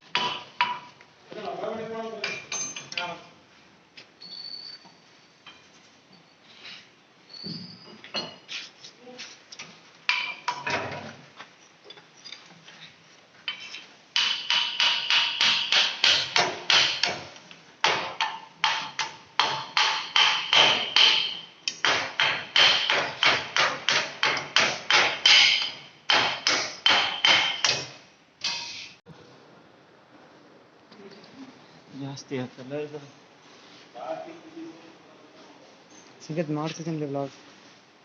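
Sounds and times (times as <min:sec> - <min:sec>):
hammer striking metal: 0:00.1 - 0:00.9, 0:13.5 - 0:28.8.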